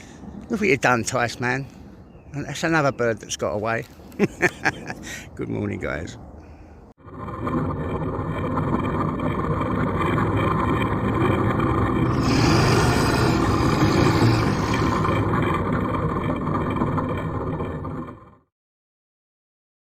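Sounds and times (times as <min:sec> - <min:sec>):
steady engine drone: 0:07.0 - 0:18.4.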